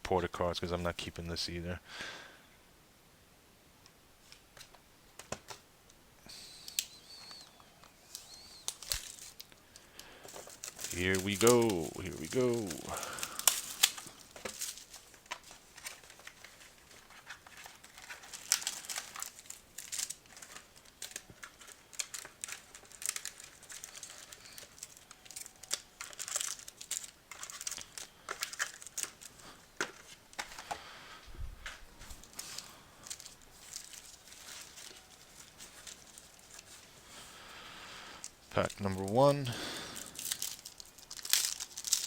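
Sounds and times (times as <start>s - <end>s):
packaging crinkling and tearing: 8.0s - 30.9s, 31.6s - 42.0s.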